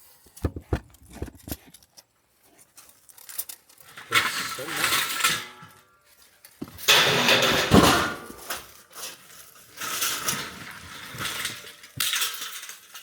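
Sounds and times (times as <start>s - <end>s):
scrap metal clattering: 3.9s - 6.0s, 6.6s - 13.0s
light metal clanks and scrapes: 3.9s - 13.0s
heavy metal clank: 6.9s - 8.6s.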